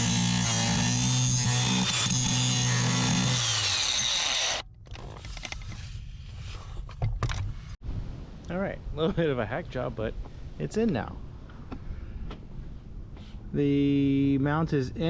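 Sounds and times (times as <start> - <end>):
power tool running on metal: 0.0 - 4.6.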